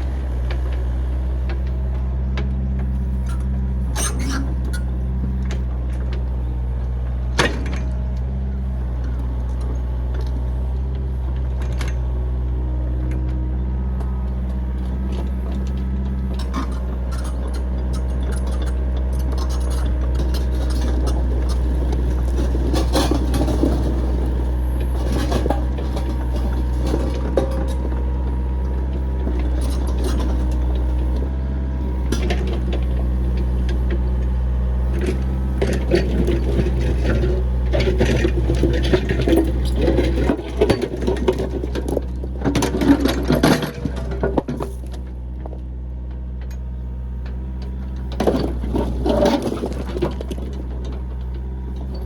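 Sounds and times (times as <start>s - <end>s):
backhoe engine running: 0.0s - 52.0s
metallic clanks and scraping: 3.1s - 6.6s, 14.0s - 33.9s, 34.9s - 45.6s.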